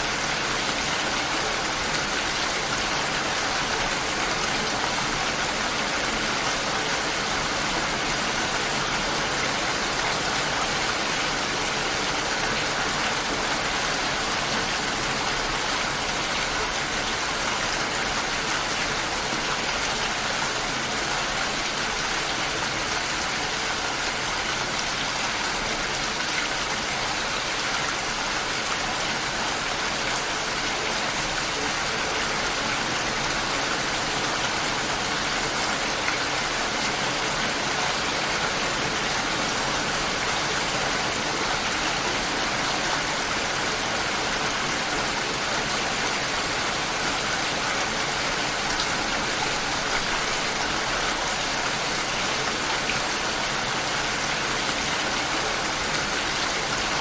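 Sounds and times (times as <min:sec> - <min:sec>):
light rain falling: 0:00.0 - 0:57.0.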